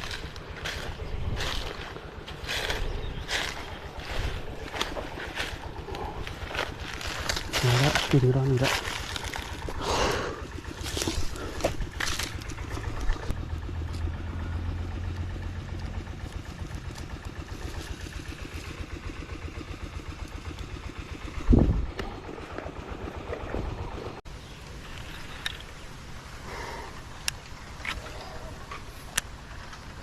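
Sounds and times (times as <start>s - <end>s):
small engine running: 0.0s - 30.0s.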